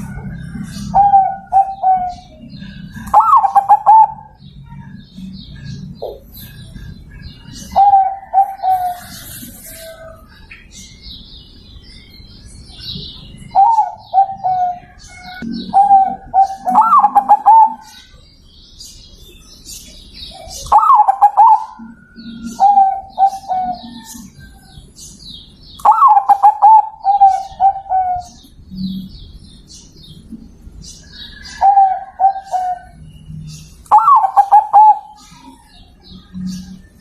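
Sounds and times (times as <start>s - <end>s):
dove cooing: 0.0s - 10.2s, 13.4s - 18.0s, 20.4s - 24.7s, 25.8s - 29.0s, 31.3s - 37.0s
small birds chirping faintly: 0.0s - 37.0s.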